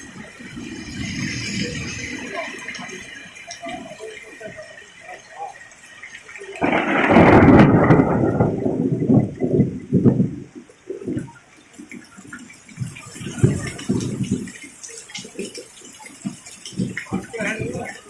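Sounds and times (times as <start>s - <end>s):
thunder rumbling: 0.0s - 3.9s, 6.5s - 14.7s
heavy rain: 0.0s - 18.0s
water splashing: 0.0s - 18.0s.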